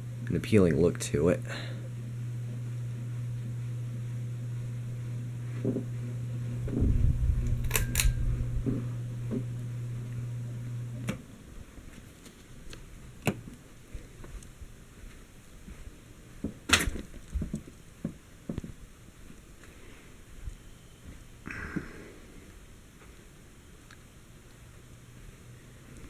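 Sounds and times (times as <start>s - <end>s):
steady low hum: 0.0s - 26.0s
camera handling rumble: 6.7s - 8.8s.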